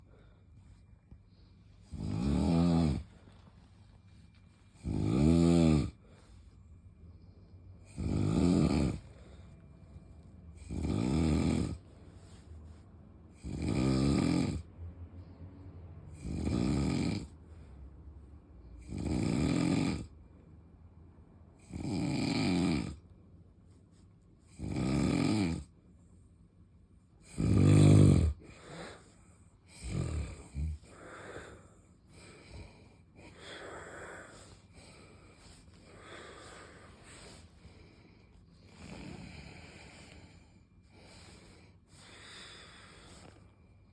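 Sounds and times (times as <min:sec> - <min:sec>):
irregular breathing: 0:00.0 - 0:43.9
person snoring: 0:01.8 - 0:03.2, 0:04.8 - 0:06.2, 0:07.8 - 0:09.5, 0:10.5 - 0:11.9, 0:13.3 - 0:14.7, 0:16.1 - 0:17.4, 0:18.8 - 0:20.1, 0:21.6 - 0:23.0, 0:24.5 - 0:25.7, 0:27.2 - 0:43.9.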